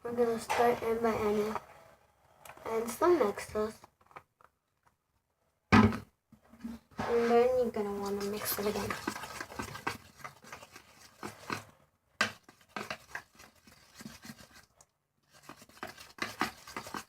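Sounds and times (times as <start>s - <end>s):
toothbrush stirring in a bowl: 7.1s - 17.0s.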